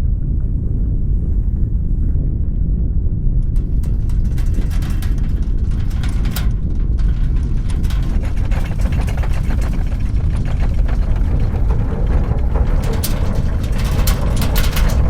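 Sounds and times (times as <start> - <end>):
deep earthquake rumble: 0.0 - 15.0
rattling and crackling clicks: 3.4 - 15.0.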